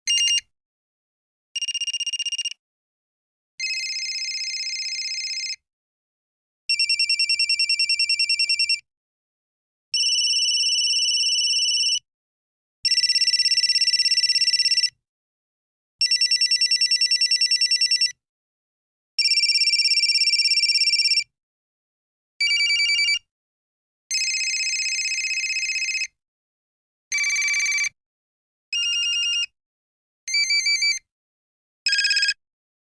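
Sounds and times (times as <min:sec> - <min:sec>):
mobile phone ringtones: 0:00.1 - 0:00.5, 0:01.6 - 0:02.6, 0:03.6 - 0:05.6, 0:06.7 - 0:08.8, 0:10.0 - 0:12.0, 0:12.8 - 0:15.0, 0:16.0 - 0:18.2, 0:19.2 - 0:21.3, 0:22.4 - 0:23.3, 0:24.1 - 0:26.2, 0:27.1 - 0:28.0, 0:28.8 - 0:29.5, 0:30.3 - 0:31.0, 0:31.9 - 0:32.4.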